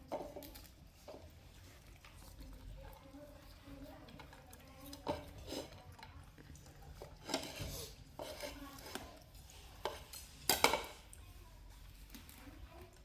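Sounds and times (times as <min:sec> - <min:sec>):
dishes and utensils clinking: 0:06.9 - 0:11.2.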